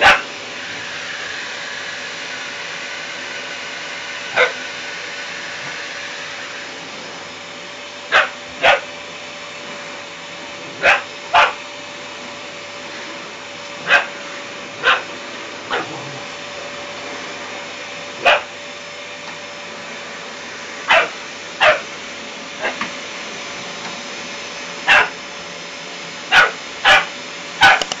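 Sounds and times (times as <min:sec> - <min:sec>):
puppy barking: 0:00.0 - 0:00.3, 0:04.3 - 0:04.6, 0:08.1 - 0:08.9, 0:10.8 - 0:11.6, 0:13.8 - 0:14.2, 0:14.8 - 0:15.1, 0:15.7 - 0:16.2, 0:18.2 - 0:18.5, 0:20.9 - 0:21.8, 0:22.6 - 0:22.8, 0:24.9 - 0:25.2, 0:26.3 - 0:28.0
vacuum cleaner droning: 0:00.0 - 0:28.0.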